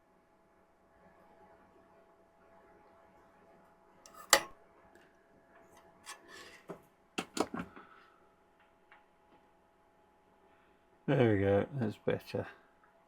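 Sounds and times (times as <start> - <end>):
faint steady hum: 0.0 - 13.0
tools clicking on workbench: 4.1 - 4.5, 7.2 - 7.6.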